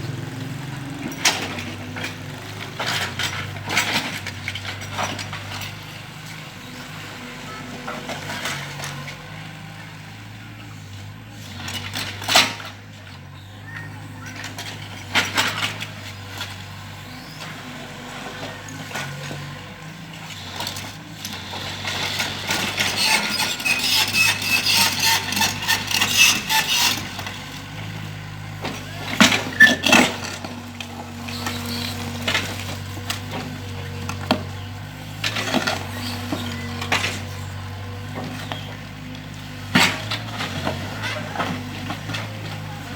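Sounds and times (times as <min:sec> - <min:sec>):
excavator engine running: 0:00.0 - 0:42.9
bucket scraping gritty ground: 0:20.4 - 0:38.7.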